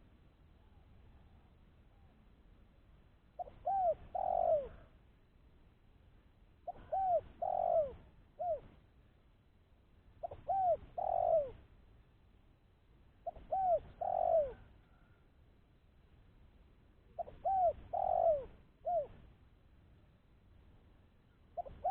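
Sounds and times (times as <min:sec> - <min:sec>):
dove cooing: 0:03.4 - 0:05.0, 0:06.6 - 0:08.8, 0:10.2 - 0:11.7, 0:13.2 - 0:15.2, 0:17.2 - 0:19.2, 0:21.6 - 0:21.9.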